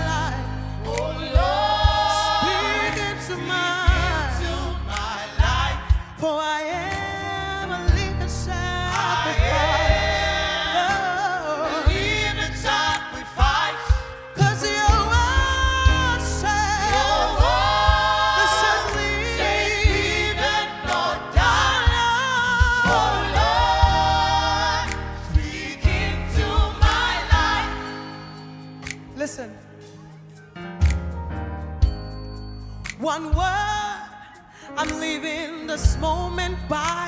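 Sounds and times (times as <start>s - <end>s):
live band bass and drums: 0.0s - 27.9s, 35.8s - 37.0s
choir singing with vibrato: 0.0s - 30.6s.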